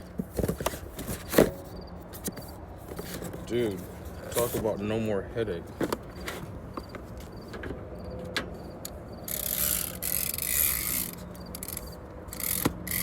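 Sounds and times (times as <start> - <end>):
ratchet strap clicks: 8.8 - 13.0.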